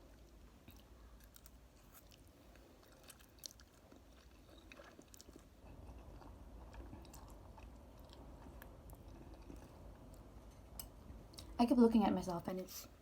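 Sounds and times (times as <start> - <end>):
person chewing: 0.2 - 10.4.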